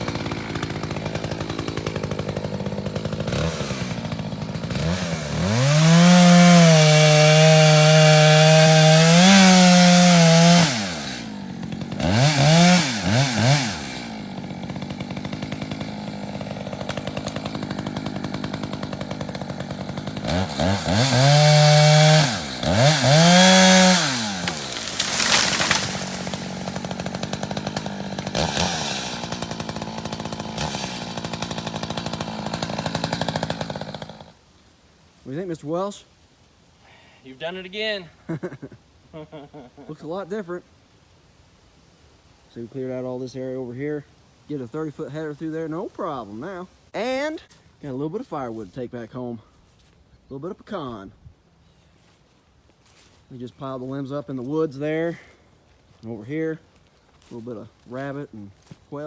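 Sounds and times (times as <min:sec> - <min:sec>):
chainsaw idling and revving: 0:00.0 - 0:34.4.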